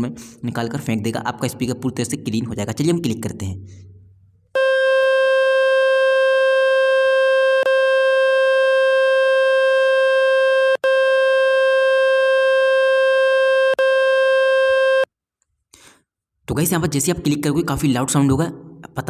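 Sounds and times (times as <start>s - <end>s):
loud buzzy tone: 4.6s - 15.1s.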